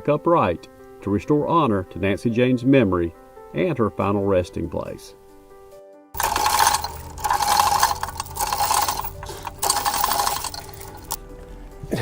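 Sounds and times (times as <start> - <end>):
hand ratchet rapid clicks: 6.2 - 11.2.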